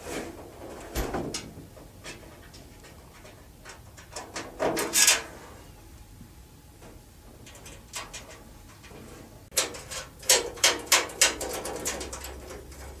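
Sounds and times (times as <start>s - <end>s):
metal hardware clicking and scraping: 9.5s - 13.0s.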